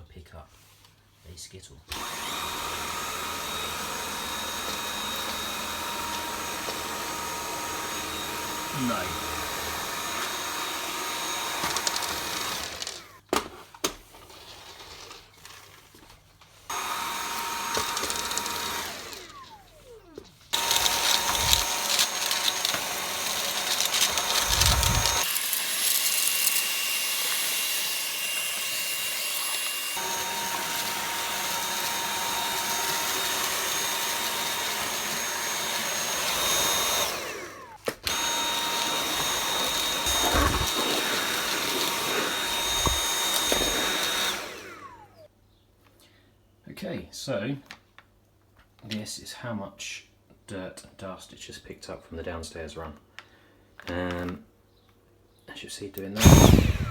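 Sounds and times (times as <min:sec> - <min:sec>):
vacuum cleaner whine: 0:01.9 - 0:13.3, 0:16.7 - 0:45.3, 0:56.0 - 0:56.9.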